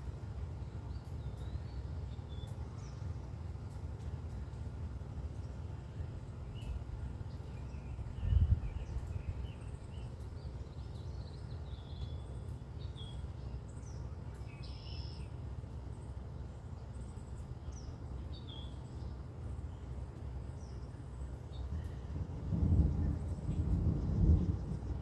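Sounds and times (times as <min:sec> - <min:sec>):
low rumble: 0:00.0 - 0:14.6, 0:20.6 - 0:25.0
birds chirping and whistling: 0:07.4 - 0:15.3.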